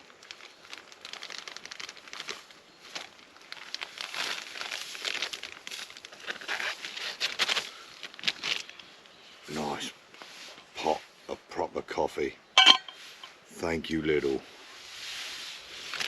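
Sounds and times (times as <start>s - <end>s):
crinkling and rustling: 0.0s - 9.1s, 15.8s - 16.0s.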